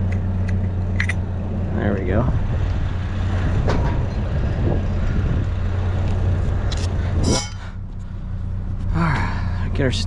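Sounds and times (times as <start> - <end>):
truck engine idling: 0.0 - 10.0
loud clunk: 3.5 - 4.3.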